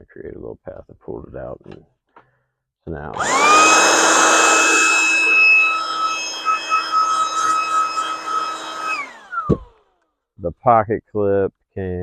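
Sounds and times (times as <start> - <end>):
heat gun blower whining: 3.2 - 9.9.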